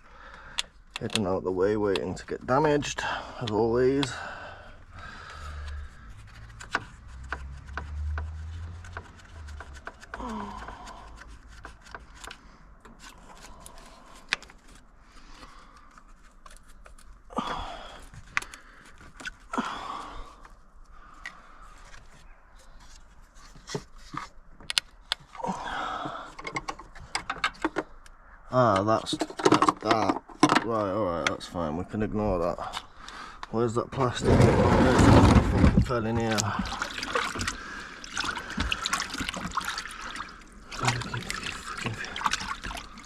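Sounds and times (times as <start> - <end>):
plastic clips clicking and scraping: 0.5 - 2.2.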